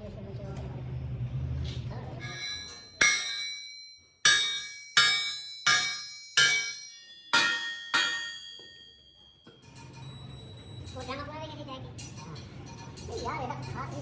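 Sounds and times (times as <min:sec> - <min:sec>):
metal striking metal ringing: 0:02.2 - 0:11.2.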